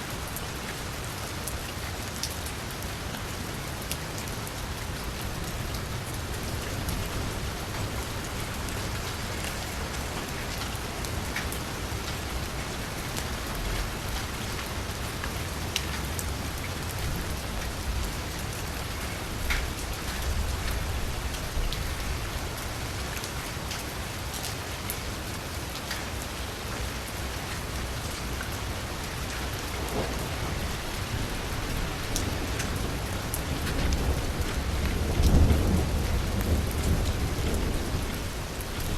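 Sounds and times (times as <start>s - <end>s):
steady rain on a street: 0.0s - 38.9s
low thunder rumble: 29.8s - 38.9s.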